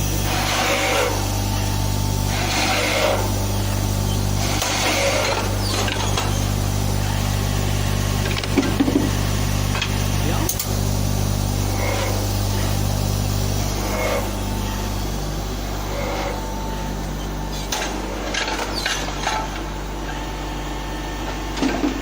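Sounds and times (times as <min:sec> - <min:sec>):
drilling machine electric hum: 0:00.0 - 0:22.0
sharp clicks and knocks: 0:08.2 - 0:09.1.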